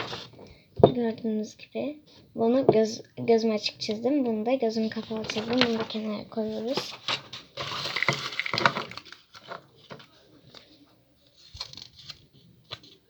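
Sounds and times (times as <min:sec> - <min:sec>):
paper rustling: 0:00.0 - 0:00.4, 0:04.8 - 0:13.0.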